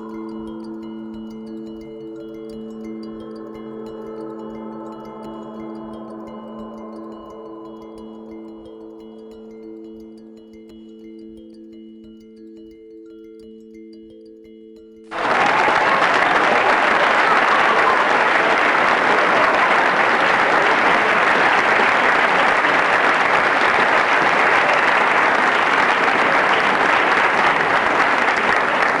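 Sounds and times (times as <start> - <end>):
loud dense applause: 15.1 - 29.0.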